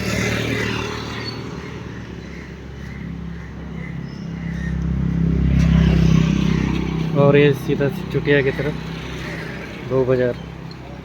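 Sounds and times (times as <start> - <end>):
road traffic passing: 0.0 - 11.0
vehicle engine hum: 0.0 - 11.0.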